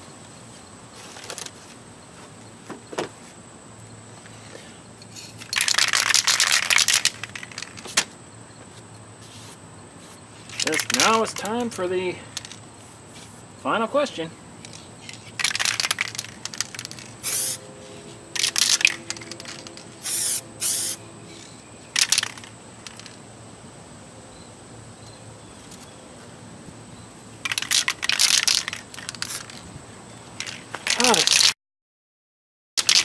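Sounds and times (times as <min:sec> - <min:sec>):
aerosol spray can hissing: 0:17.2 - 0:17.7, 0:20.0 - 0:21.0.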